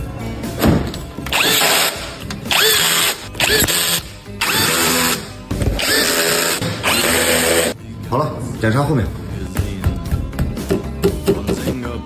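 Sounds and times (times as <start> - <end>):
power tool motor whining: 1.3 - 7.8.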